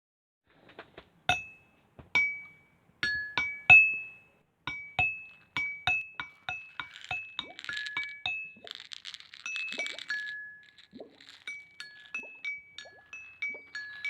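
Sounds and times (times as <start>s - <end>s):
ringing clinking strikes: 1.3s - 7.4s.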